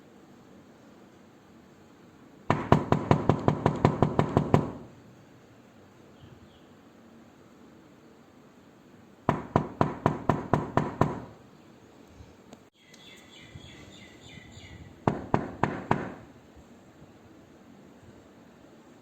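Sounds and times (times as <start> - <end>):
knocking on a door: 2.5 - 4.9, 9.3 - 11.4, 15.1 - 16.3.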